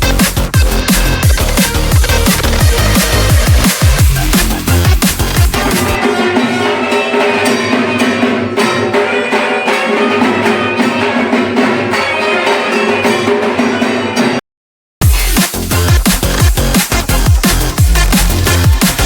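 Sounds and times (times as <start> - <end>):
electronic music with bass beat: 0.0 - 6.0, 15.0 - 19.0.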